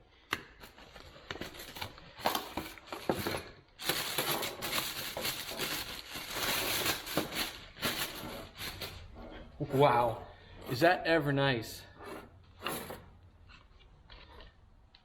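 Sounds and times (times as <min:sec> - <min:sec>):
packaging clicks and knocks: 0:00.3 - 0:09.0
packaging crinkling and rustling: 0:00.6 - 0:09.0.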